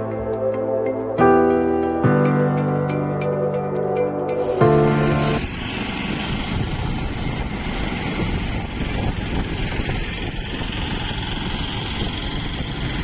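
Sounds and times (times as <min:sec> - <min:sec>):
moving vehicle running noise: 0:00.0 - 0:13.0
wind rumble on microphone: 0:04.6 - 0:13.0.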